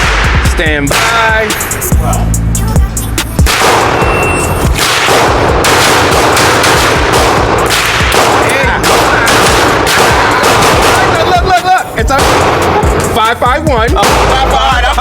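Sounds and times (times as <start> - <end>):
shot timer beep: 4.0 - 4.7.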